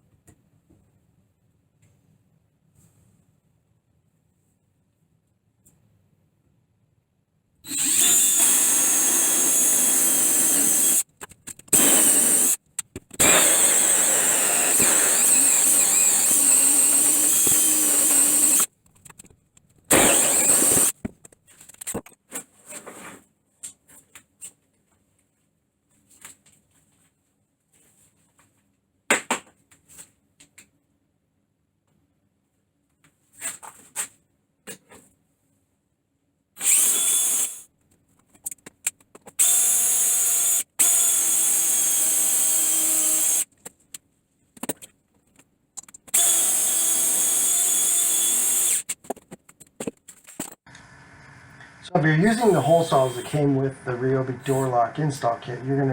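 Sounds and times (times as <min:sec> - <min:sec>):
drill cutting with hole saw: 0:07.7 - 0:11.1, 0:11.7 - 0:12.6, 0:13.2 - 0:18.7, 0:19.9 - 0:21.0, 0:36.6 - 0:37.6, 0:39.4 - 0:43.5, 0:46.1 - 0:48.9, 0:51.4 - 0:55.0.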